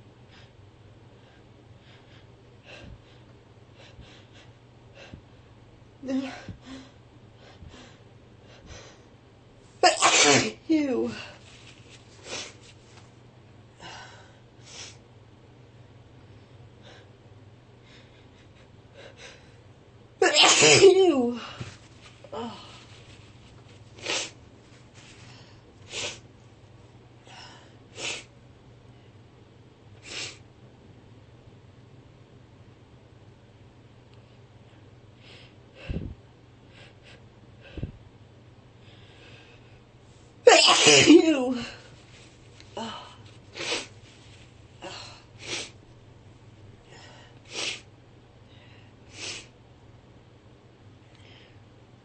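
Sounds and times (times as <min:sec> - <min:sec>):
woman breathing quickly: 0:00.2 - 0:05.5, 0:06.2 - 0:09.2, 0:17.8 - 0:19.7, 0:34.2 - 0:38.0, 0:38.8 - 0:39.9, 0:46.8 - 0:49.5
woman sneezing: 0:09.8 - 0:11.2, 0:20.2 - 0:21.4, 0:40.5 - 0:41.8
woman breathing and sniffling: 0:11.1 - 0:12.8, 0:21.4 - 0:26.3, 0:27.2 - 0:28.3, 0:41.5 - 0:45.8, 0:46.8 - 0:47.9, 0:48.5 - 0:49.6.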